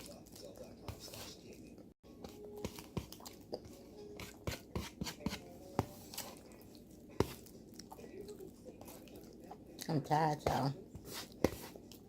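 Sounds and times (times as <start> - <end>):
person chewing food: 0.0 - 4.7, 5.9 - 9.9.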